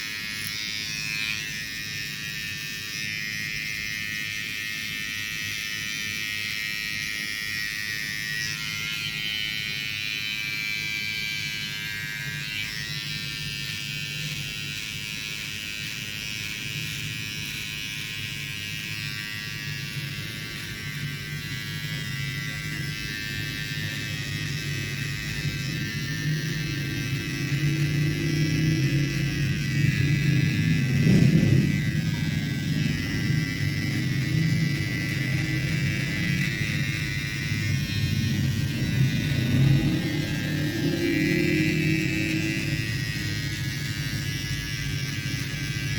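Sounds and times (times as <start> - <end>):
electric hair clippers buzzing: 0.0 - 45.9.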